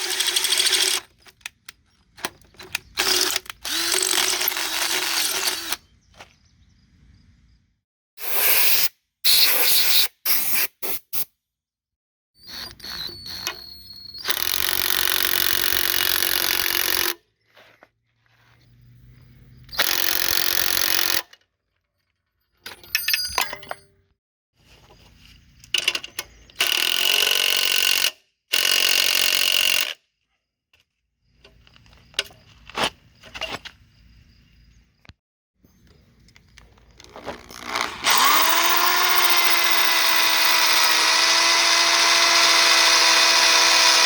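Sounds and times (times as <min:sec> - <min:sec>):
power tool working metal: 0:00.0 - 0:01.1, 0:03.0 - 0:05.8, 0:37.3 - 0:44.0
light clinks and handling: 0:21.7 - 0:24.0.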